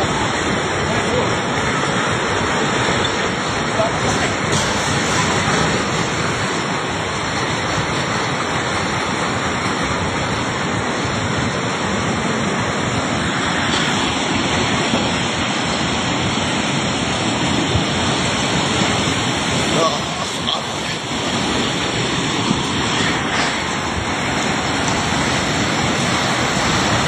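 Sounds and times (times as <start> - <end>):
flooding river rushing: 0.0 - 27.0.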